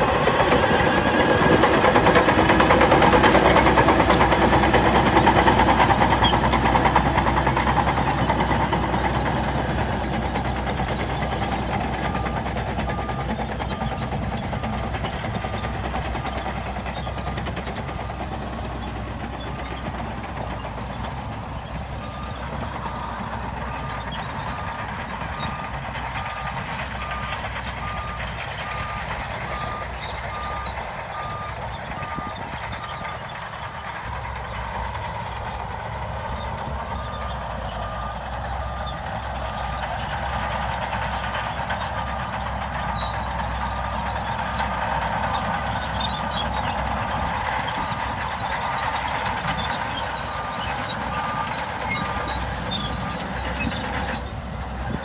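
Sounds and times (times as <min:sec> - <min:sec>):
heavy construction machinery running: 0:00.0 - 0:55.0.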